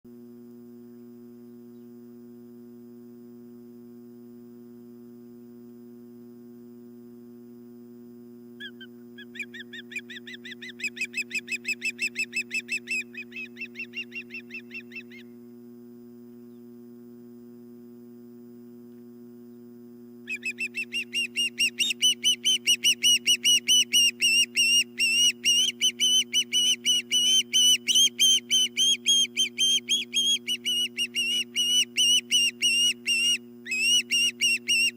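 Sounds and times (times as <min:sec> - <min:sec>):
steady low hum: 0:00.1 - 0:34.9
osprey whistled chirps: 0:08.6 - 0:15.3, 0:20.2 - 0:34.9.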